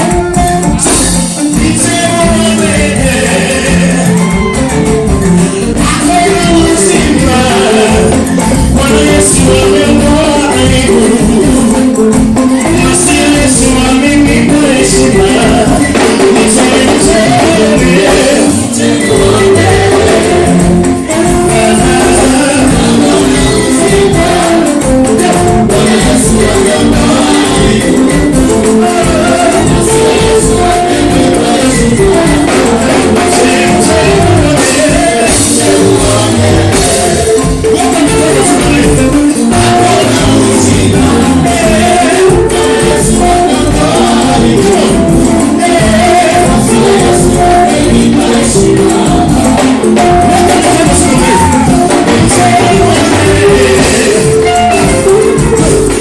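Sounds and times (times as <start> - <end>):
band playing upbeat worship song: 0.0 - 56.0.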